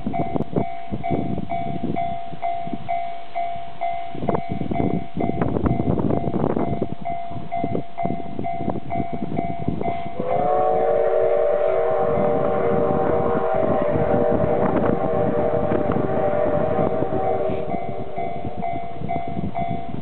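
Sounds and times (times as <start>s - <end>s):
steam locomotive working: 0.0s - 20.0s
steam whistle chord: 10.1s - 18.9s.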